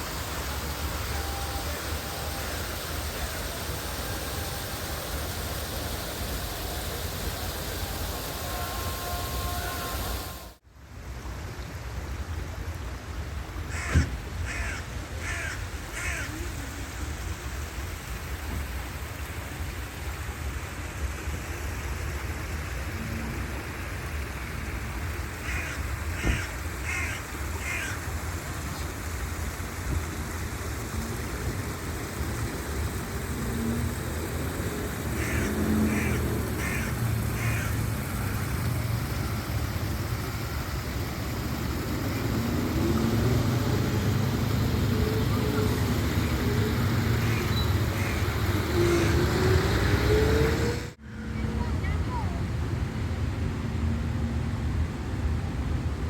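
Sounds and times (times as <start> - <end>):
waterfall rushing: 0.0 - 10.6, 13.3 - 51.0
crow cawing: 13.7 - 16.4, 25.4 - 28.0, 35.2 - 37.8, 47.2 - 48.4.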